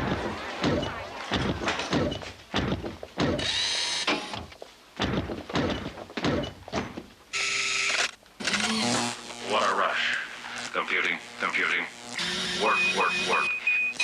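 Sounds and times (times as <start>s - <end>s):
heavy clunking footsteps: 0.0s - 3.4s, 4.4s - 7.2s
short high mechanical whir: 7.4s - 9.2s.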